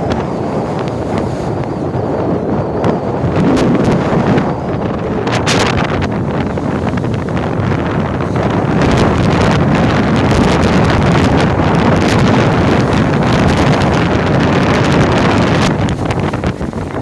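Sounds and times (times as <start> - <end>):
strong wind buffeting microphone: 0.0 - 17.0.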